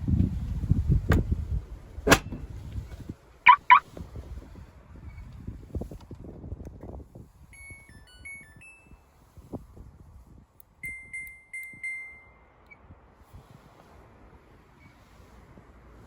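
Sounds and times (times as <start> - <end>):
electronic beep melody: 3.5 - 3.8
quick beeps and held tone: 3.5 - 3.8.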